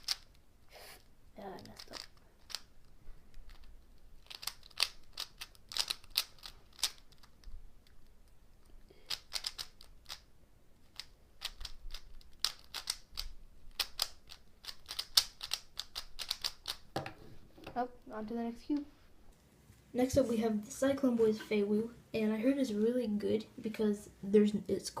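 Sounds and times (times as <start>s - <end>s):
speed cube clicking: 0.0s - 0.4s, 1.6s - 8.0s, 9.0s - 16.8s.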